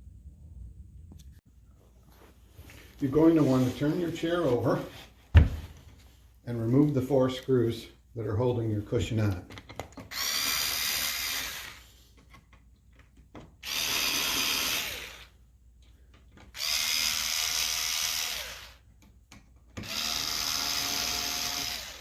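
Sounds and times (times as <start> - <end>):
power drill whine: 10.1 - 11.9, 13.6 - 15.3, 16.6 - 18.8, 19.8 - 22.0.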